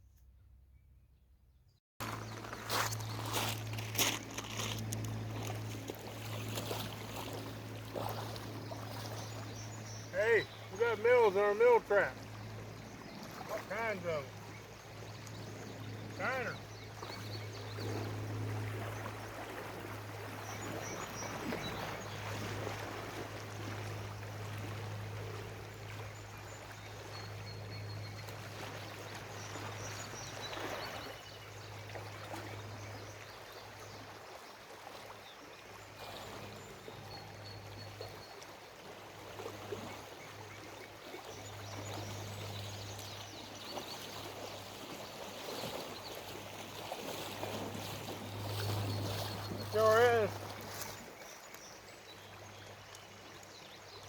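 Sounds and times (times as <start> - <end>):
river water rushing over gravel: 2.0 - 9.6, 45.9 - 51.2.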